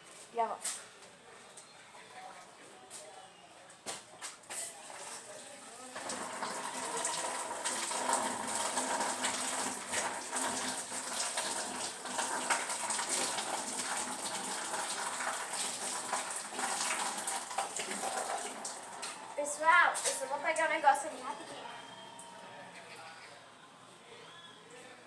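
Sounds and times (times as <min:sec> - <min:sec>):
tap water running into sink: 0:04.9 - 0:19.4.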